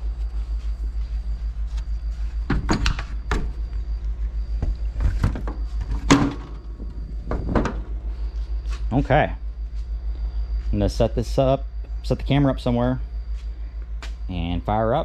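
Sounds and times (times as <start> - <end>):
pulsing low hum: 0.0 - 15.0
sharp knocks and clunks: 2.5 - 3.5, 4.6 - 7.9.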